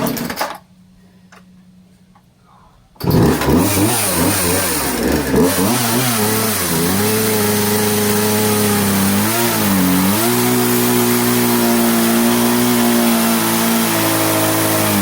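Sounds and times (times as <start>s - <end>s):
atv engine revving: 3.0s - 15.0s.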